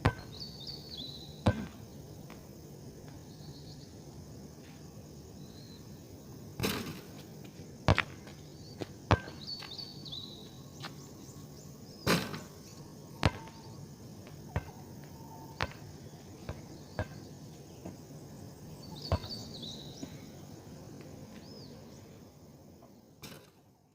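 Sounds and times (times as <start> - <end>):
faint bird chirps: 0.0 - 1.9, 5.3 - 6.0, 8.3 - 13.9, 14.5 - 20.6, 21.3 - 23.0.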